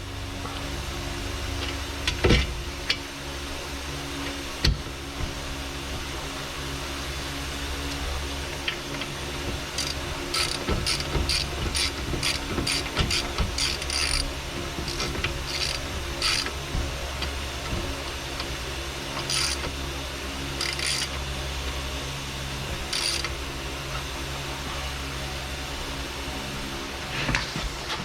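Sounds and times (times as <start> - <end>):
hand ratchet clicking: 8.6 - 19.8, 20.6 - 21.2, 22.9 - 23.3.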